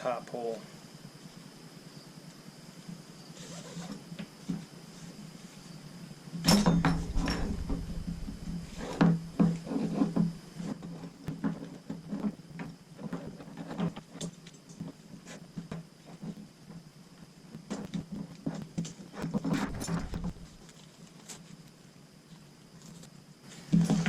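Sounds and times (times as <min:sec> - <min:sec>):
rope scraping through metal plate: 0:19.4 - 0:20.6.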